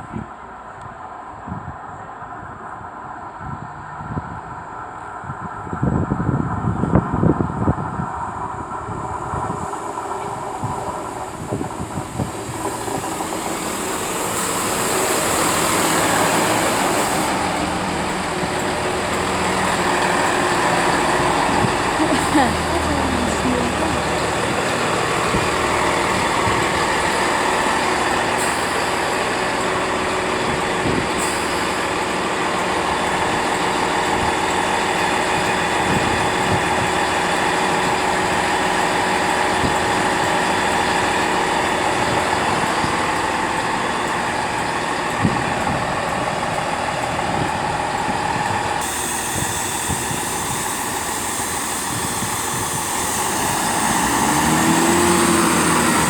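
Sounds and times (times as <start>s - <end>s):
train engine running: 0.0s - 56.0s.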